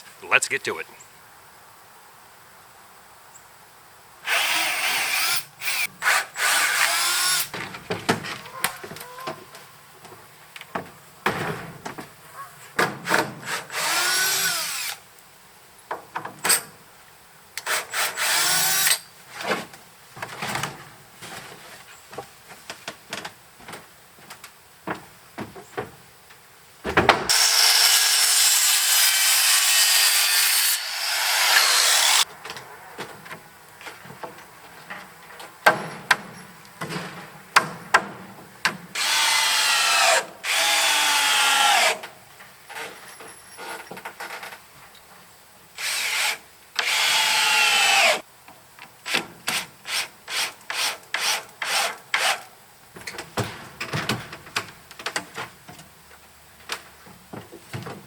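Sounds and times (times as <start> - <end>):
power drill in wood: 4.3 - 7.6, 13.5 - 15.0, 17.6 - 19.1, 27.3 - 32.2, 39.0 - 42.1, 45.8 - 48.2, 49.5 - 52.4.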